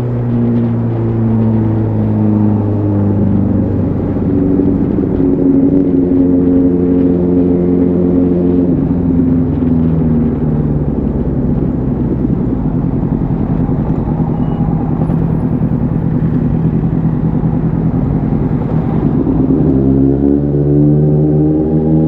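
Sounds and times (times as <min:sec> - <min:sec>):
motorcycle engine rumbling: 0:00.0 - 0:22.0.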